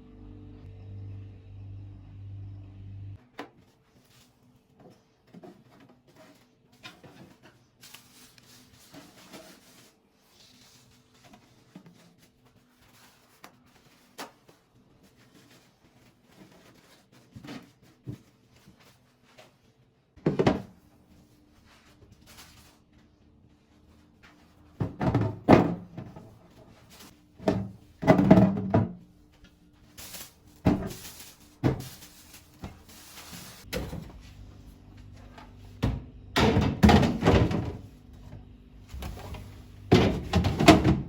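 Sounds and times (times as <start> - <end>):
low hum: 0.0 - 3.2
household items clicking and rustling: 30.0 - 34.2.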